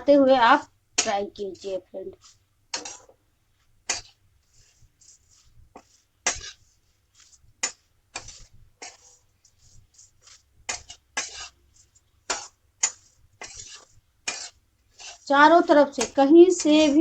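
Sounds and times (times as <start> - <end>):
spatula scraping dry rice flakes: 1.0 - 17.0.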